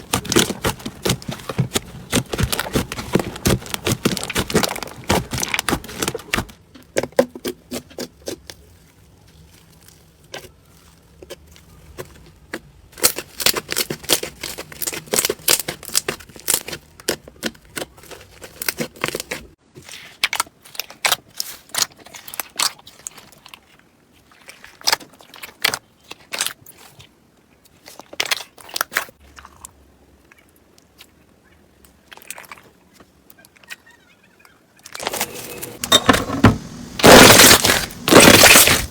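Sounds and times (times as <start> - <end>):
slime crackling and popping: 0.0 - 6.6, 7.4 - 23.4, 37.0 - 38.9.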